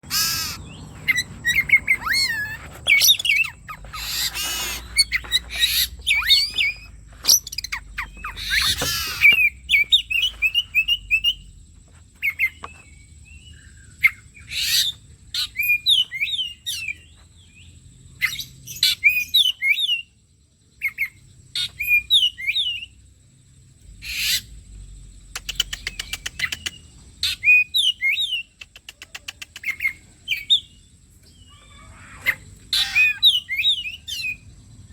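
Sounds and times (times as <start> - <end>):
harsh bird notes: 0.0 - 10.1.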